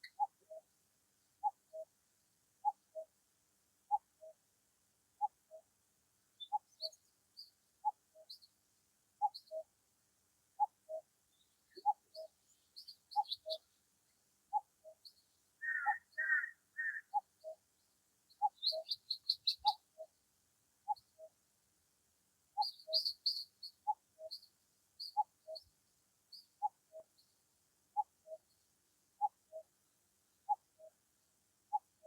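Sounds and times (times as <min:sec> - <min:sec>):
birds chirping: 0:10.9 - 0:13.8, 0:14.5 - 0:20.1, 0:22.6 - 0:25.7
bird warbling: 0:15.6 - 0:17.2.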